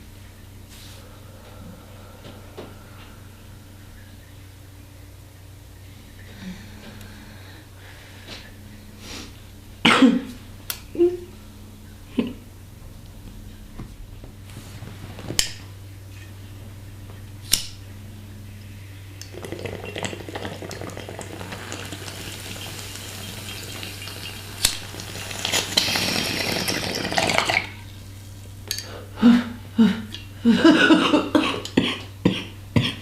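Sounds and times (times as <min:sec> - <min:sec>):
person coughing: 0:09.8 - 0:10.4, 0:29.2 - 0:33.0
water bubbling in a bong: 0:19.2 - 0:28.2.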